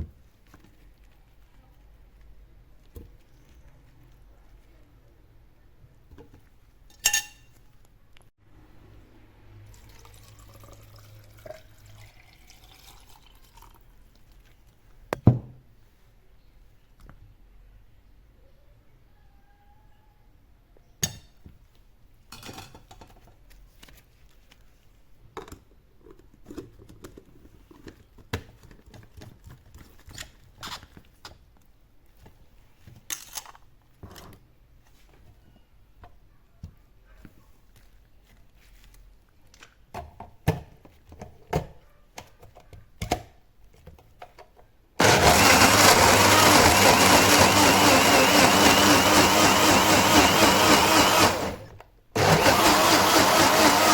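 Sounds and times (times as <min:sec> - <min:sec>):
electric blender running: 0:45.0 - 0:53.9.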